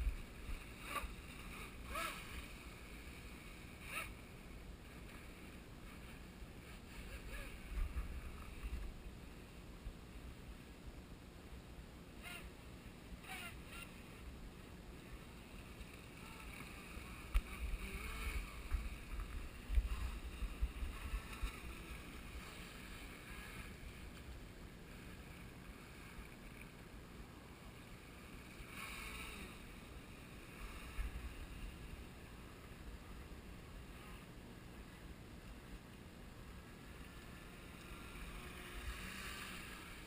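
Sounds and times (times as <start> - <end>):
electric motor whine: 15.1 - 24.3, 36.9 - 40.0.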